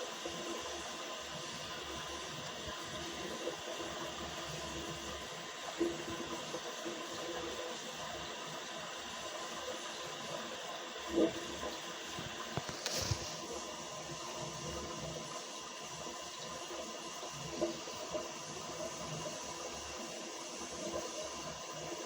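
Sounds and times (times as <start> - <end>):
toilet gurgling: 0.0 - 22.0.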